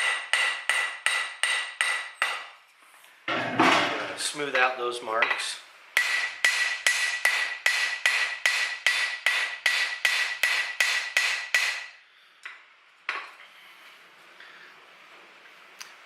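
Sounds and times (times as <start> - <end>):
hammer striking steel on anvil: 0.0 - 2.5, 3.3 - 13.3.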